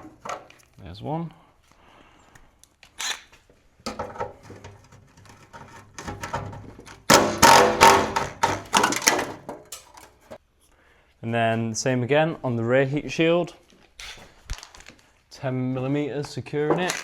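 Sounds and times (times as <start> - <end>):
knocks: 7.1 - 9.7.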